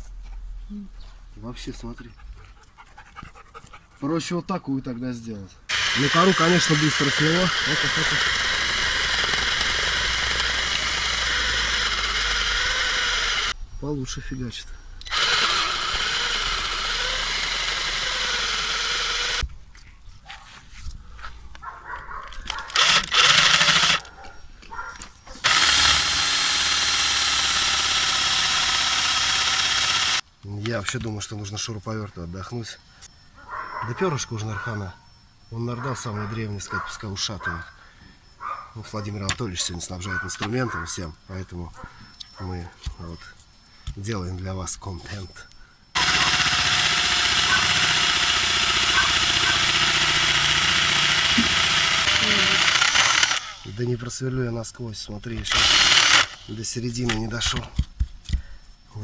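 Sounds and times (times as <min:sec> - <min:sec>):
cordless drill boring into wood: 0:05.7 - 0:13.6, 0:15.0 - 0:19.4, 0:22.7 - 0:24.1, 0:25.4 - 0:30.2, 0:45.9 - 0:53.8, 0:55.4 - 0:57.2.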